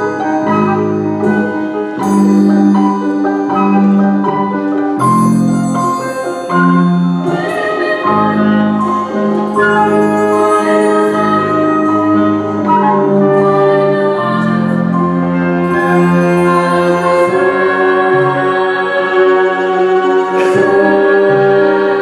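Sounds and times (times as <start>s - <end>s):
orchestra and choir performing: 0.0s - 22.0s.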